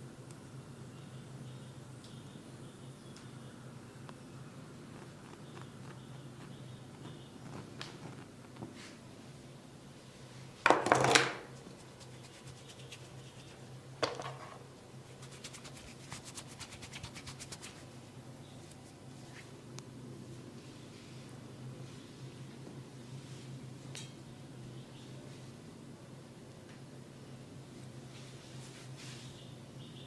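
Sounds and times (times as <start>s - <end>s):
light rapid tapping: 4.9s - 8.7s.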